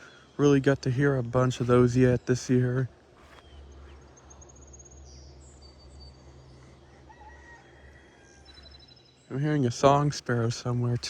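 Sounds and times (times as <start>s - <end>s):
distant chickens: 0.0s - 11.0s
low steady hum: 0.0s - 11.0s
small birds chirping: 0.0s - 11.0s.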